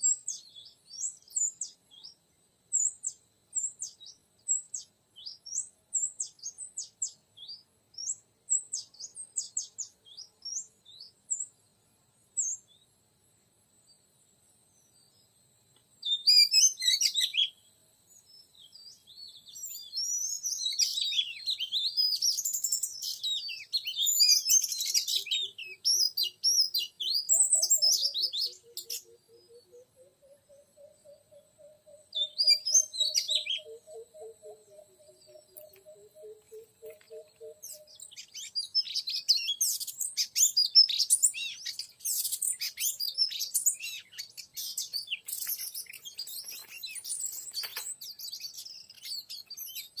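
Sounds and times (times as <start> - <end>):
bird song whistles and chatter: 16.0 - 17.6, 18.2 - 50.0.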